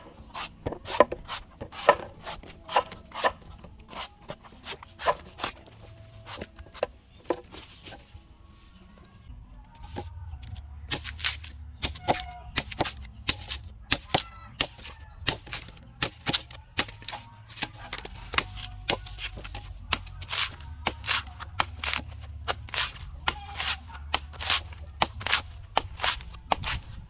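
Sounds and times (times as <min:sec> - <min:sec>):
blade chopping coconut: 0:00.0 - 0:07.6, 0:10.9 - 0:27.0.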